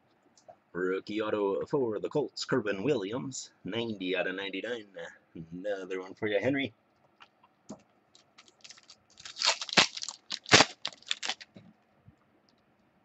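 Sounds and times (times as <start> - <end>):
plastic packaging crackling: 8.2 - 11.6.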